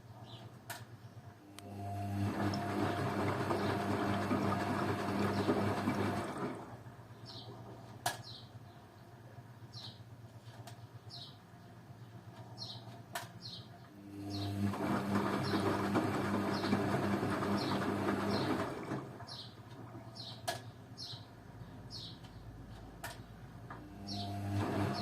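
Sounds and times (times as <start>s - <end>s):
washing machine humming: 1.5s - 7.8s, 13.9s - 20.2s, 23.7s - 25.0s
washing machine motor whining: 1.6s - 6.9s, 14.0s - 19.4s, 23.8s - 25.0s.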